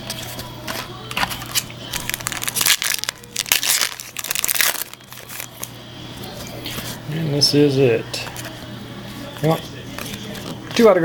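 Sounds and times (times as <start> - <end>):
foil wrapper crinkling and tearing: 0.1 - 5.8.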